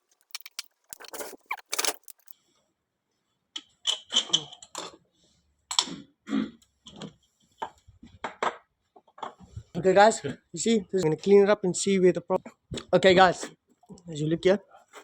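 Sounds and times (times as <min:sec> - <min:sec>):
metal tools clinking and clattering: 0:00.1 - 0:02.3.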